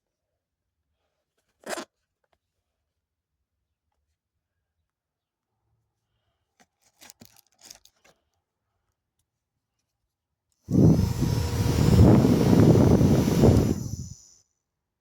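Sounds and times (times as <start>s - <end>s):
mini fan running: 10.7s - 14.3s.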